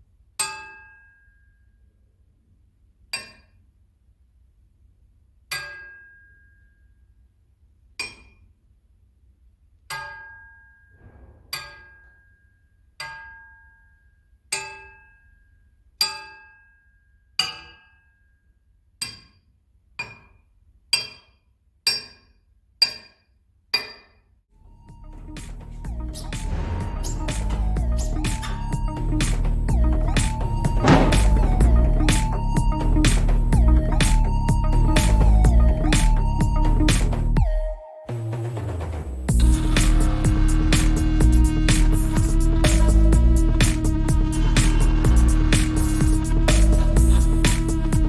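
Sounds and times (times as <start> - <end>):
steel crankshafts struck ringing: 26.2 - 32.6.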